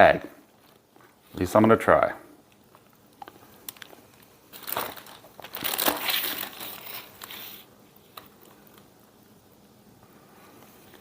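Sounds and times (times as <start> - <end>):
plastic bag crinkling: 2.7 - 8.8.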